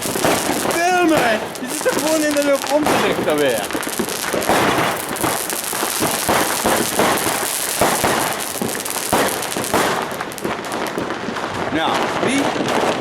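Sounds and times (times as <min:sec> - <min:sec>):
fireworks crackling and banging: 0:00.0 - 0:13.0
loud firework bangs: 0:00.0 - 0:13.0.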